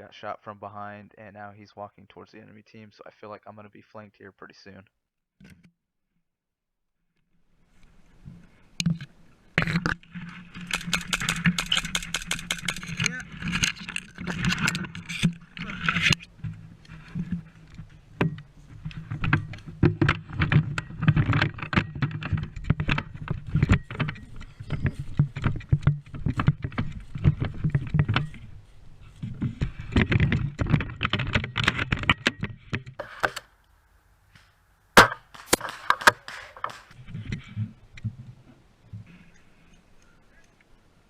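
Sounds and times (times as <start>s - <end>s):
sharp crack: 34.3s - 37.0s
camera handling rustling and clicks: 35.3s - 37.0s.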